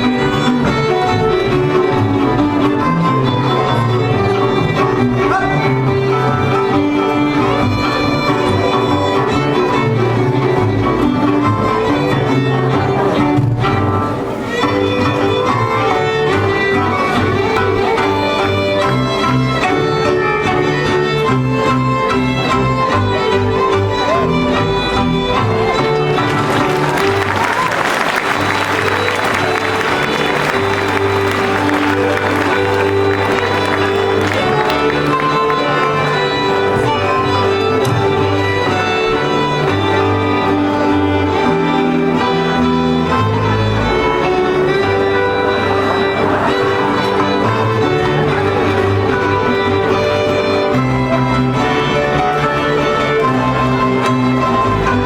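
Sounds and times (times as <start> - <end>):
fiddles playing a folk tune: 26.4 - 54.8.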